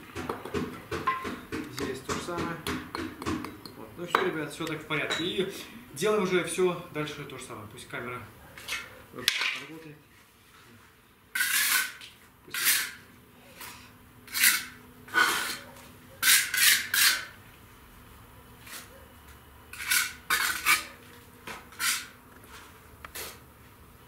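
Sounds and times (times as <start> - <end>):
trowel scraping mortar and brick: 11.4 - 13.0, 14.3 - 15.6, 16.2 - 17.4, 19.7 - 21.0, 21.7 - 22.2.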